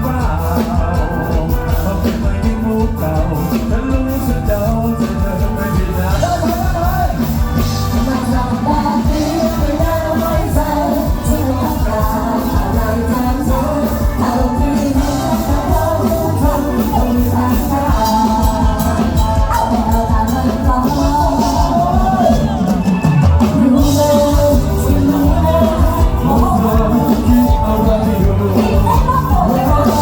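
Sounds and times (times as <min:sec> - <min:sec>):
live band music: 0:00.0 - 0:30.0.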